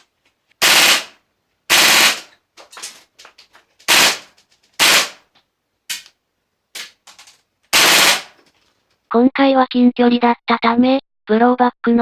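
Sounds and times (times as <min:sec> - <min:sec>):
airsoft gun firing bursts: 0:00.6 - 0:02.3, 0:03.9 - 0:05.2, 0:07.7 - 0:08.4.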